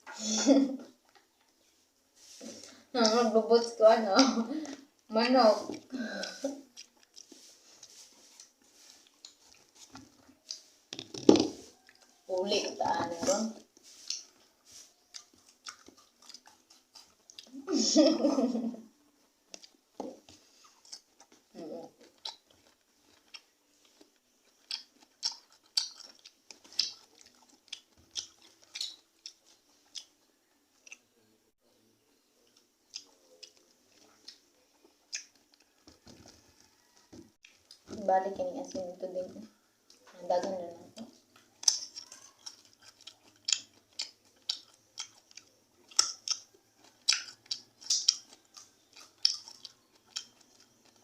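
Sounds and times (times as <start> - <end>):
chewing crisp raw fruit: 0.8 - 17.8, 18.4 - 31.4, 32.0 - 38.0, 38.6 - 51.0.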